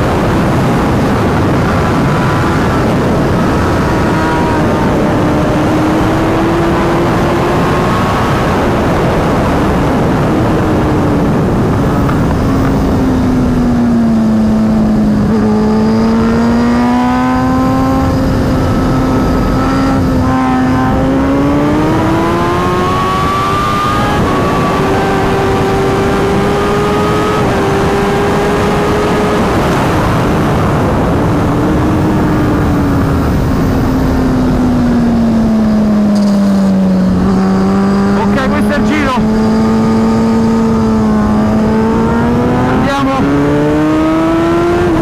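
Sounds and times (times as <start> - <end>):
heavy wind rush: 0.0 - 45.0
motorcycle engine at speed: 0.0 - 45.0.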